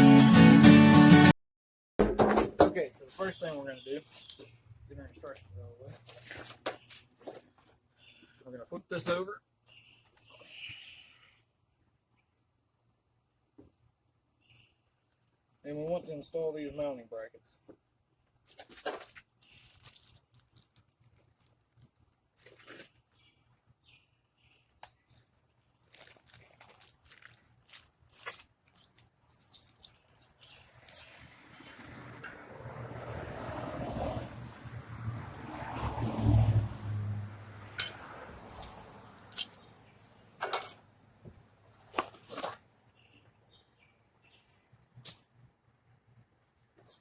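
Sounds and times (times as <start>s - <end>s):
crinkling and rustling: 4.1s - 7.8s, 18.4s - 23.6s, 24.6s - 31.2s, 40.4s - 42.7s
metal hardware clinking: 29.7s - 32.4s, 37.8s - 39.6s, 40.4s - 40.8s.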